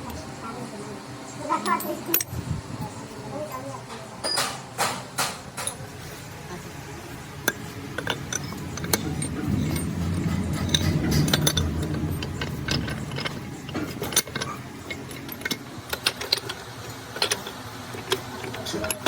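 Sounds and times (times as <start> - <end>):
low machine rumble: 5.7 - 19.0
metal tools clinking: 7.4 - 19.0.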